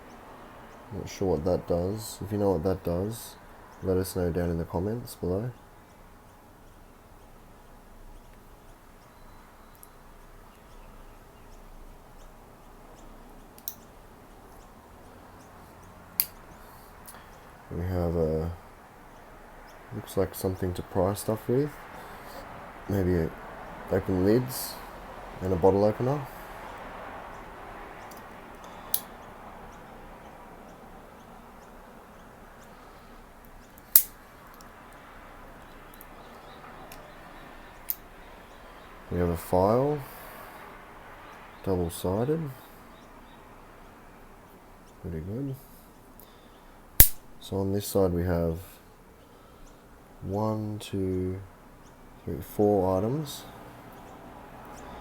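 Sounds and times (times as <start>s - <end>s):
multi-tool implements clicking: 33.7s - 34.7s, 47.0s - 47.2s.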